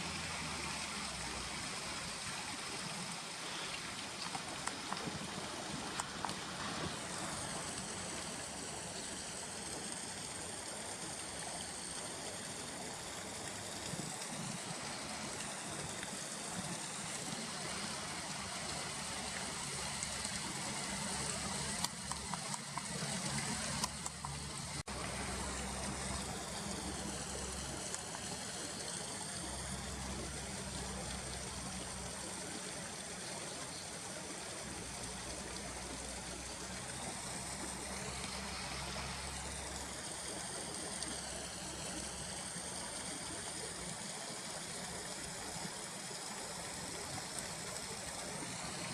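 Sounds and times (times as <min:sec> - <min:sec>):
river water rushing: 0:00.0 - 0:09.7, 0:35.1 - 0:48.9
small clicks: 0:20.0 - 0:24.7.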